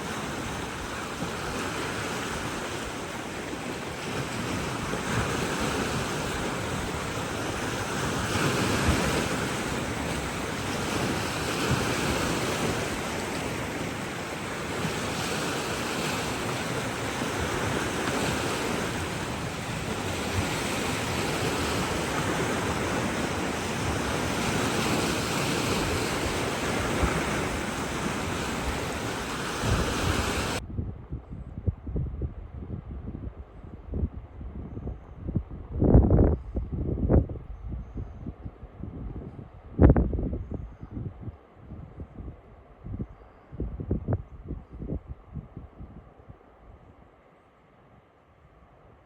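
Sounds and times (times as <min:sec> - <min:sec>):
surf washing on shore: 0:00.0 - 0:30.6
wind buffeting microphone: 0:00.0 - 0:47.0.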